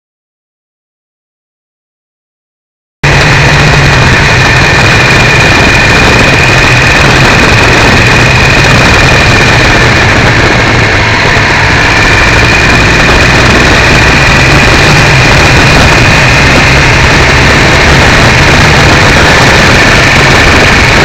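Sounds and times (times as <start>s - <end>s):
distorted motorcycle engine: 3.0s - 21.0s
high-pitched whine: 3.0s - 21.0s.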